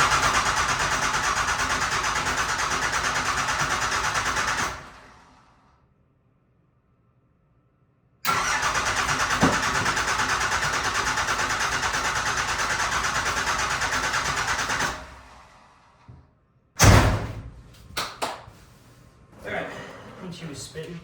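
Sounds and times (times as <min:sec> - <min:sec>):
diesel engine cranking on starter: 0:00.0 - 0:05.7, 0:08.2 - 0:16.1
loud thump: 0:16.8 - 0:17.7.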